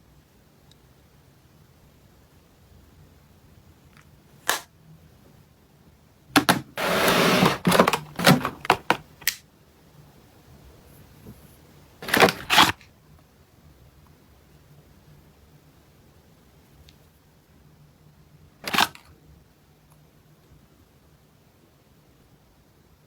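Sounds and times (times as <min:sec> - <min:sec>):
packaging rustling: 0:06.4 - 0:09.2, 0:12.0 - 0:12.8
packaging clicks and taps: 0:06.4 - 0:09.4, 0:12.0 - 0:12.8.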